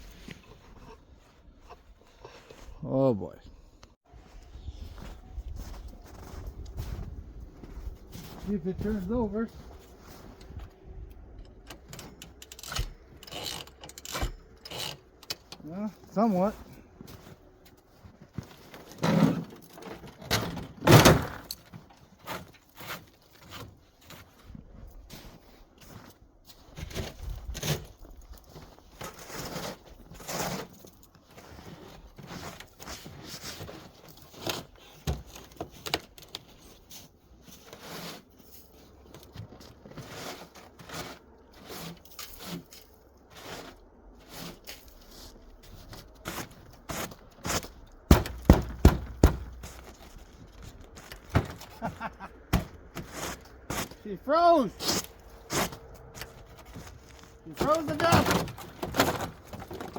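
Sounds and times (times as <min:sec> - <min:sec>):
metal clunks and scrapes: 0:11.3 - 0:15.6, 0:18.7 - 0:23.7, 0:51.0 - 0:54.0, 0:54.8 - 0:59.9
loud knocks: 0:48.1 - 0:49.7.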